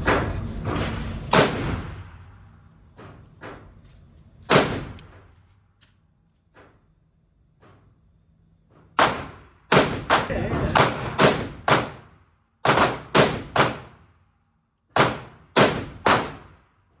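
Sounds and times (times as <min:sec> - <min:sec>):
loud gunshots with echo: 0:00.0 - 0:02.4, 0:04.5 - 0:05.0, 0:09.0 - 0:14.0, 0:15.0 - 0:16.6
distant gunshots: 0:01.3 - 0:02.2, 0:04.5 - 0:05.0, 0:09.0 - 0:14.0, 0:15.0 - 0:16.6.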